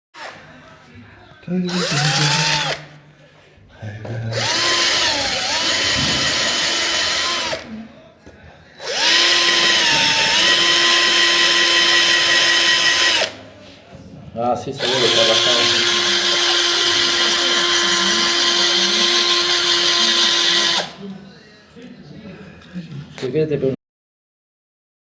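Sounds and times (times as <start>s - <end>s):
electric power tool whining: 1.7s - 2.9s, 4.3s - 7.7s, 8.8s - 13.4s, 14.8s - 21.0s.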